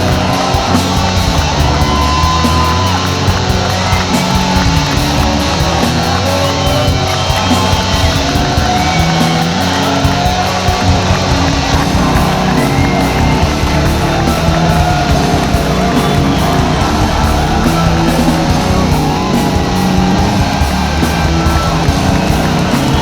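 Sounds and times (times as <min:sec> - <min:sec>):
heavy metal music: 0:00.0 - 0:23.0.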